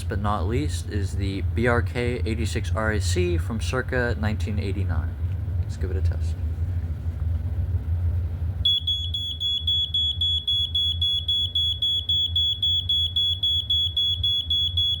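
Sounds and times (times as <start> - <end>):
steady low rumble: 0.0 - 15.0
smoke alarm high-pitched tone: 8.6 - 15.0.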